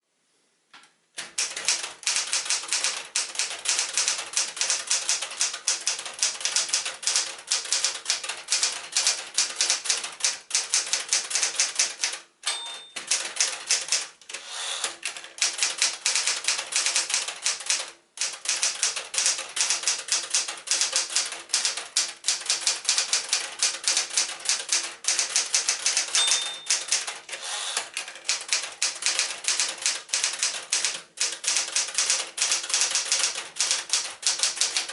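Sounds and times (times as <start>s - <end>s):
typewriter keystrokes: 1.2s - 34.9s
typewriter bell ping: 12.4s - 13.3s, 26.0s - 27.1s.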